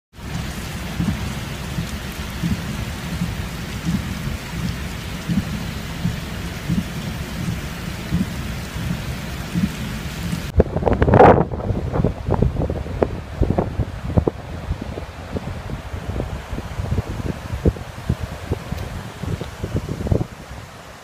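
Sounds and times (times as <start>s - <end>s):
water rushing with deep rumble: 0.1s - 21.0s
low thumps: 0.3s - 10.5s.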